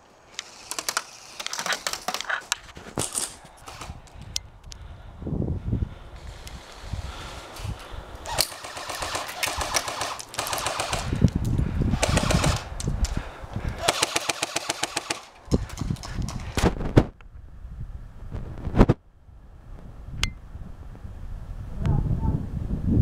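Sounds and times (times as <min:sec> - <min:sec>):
airsoft guns automatic fire: 0:08.3 - 0:11.2, 0:12.0 - 0:12.7, 0:13.8 - 0:15.3.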